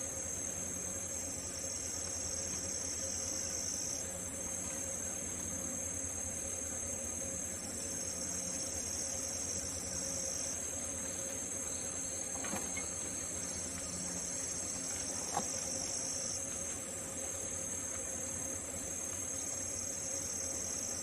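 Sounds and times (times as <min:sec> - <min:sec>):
insects trilling in chorus: 0:00.0 - 0:21.0
faint ticks: 0:12.4 - 0:18.3.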